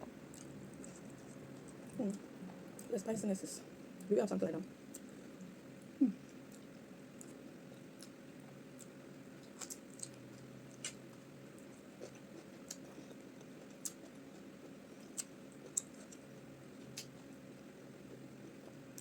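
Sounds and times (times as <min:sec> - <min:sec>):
low steady hum: 0:00.0 - 0:19.0
wet chewing mouth clicks: 0:15.2 - 0:16.2.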